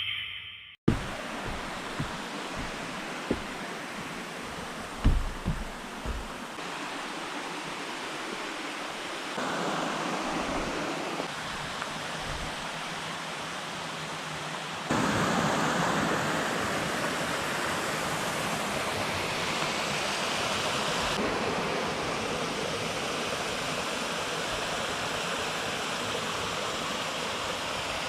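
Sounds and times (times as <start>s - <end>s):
low thumps: 0.9s - 6.6s
waterfall rushing: 0.9s - 14.3s, 14.9s - 22.4s.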